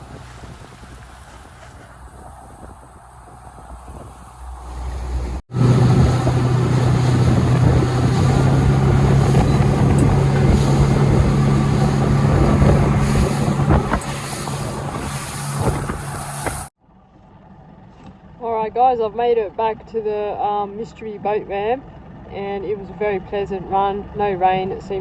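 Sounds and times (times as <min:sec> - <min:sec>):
outboard motor humming: 0:00.0 - 0:16.7, 0:19.4 - 0:25.0
wind on microphone: 0:00.0 - 0:16.7.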